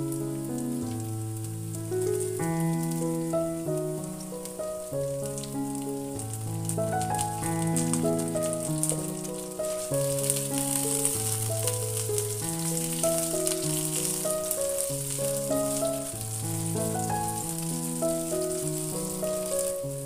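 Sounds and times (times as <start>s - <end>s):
food sizzling in hot oil: 0.0s - 20.0s.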